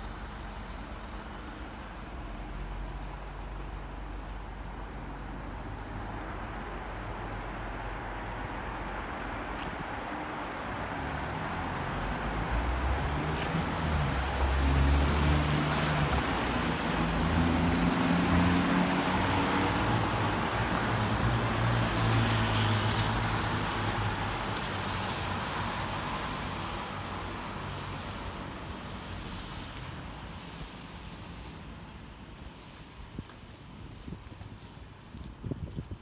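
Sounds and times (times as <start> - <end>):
vehicle engine humming: 0.0 - 7.8
rain on wet road: 0.0 - 7.9, 11.7 - 34.7.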